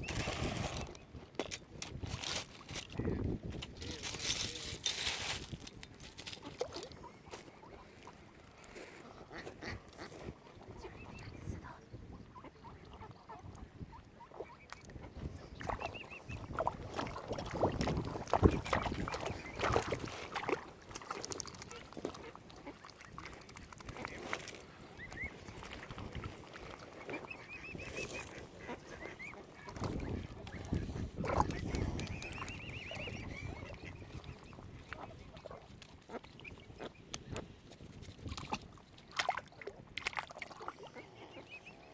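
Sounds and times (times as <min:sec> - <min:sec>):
ducks quacking: 0:08.8 - 0:16.4, 0:26.9 - 0:37.0.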